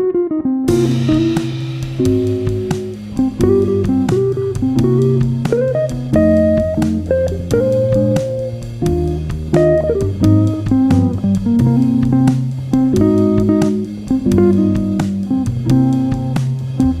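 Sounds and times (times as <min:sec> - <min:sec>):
plucked guitar notes: 0:00.0 - 0:17.0
bass line: 0:00.7 - 0:17.0.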